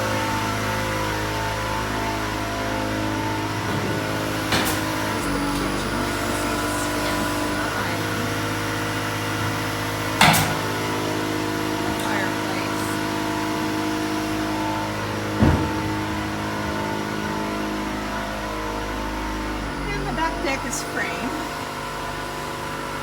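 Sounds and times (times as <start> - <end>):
motor humming: 0.0 - 23.0.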